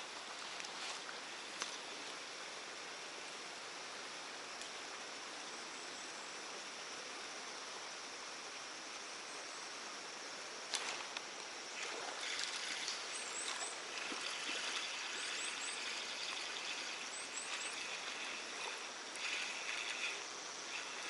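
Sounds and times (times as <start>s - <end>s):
steady outdoor hiss: 0.0s - 21.0s.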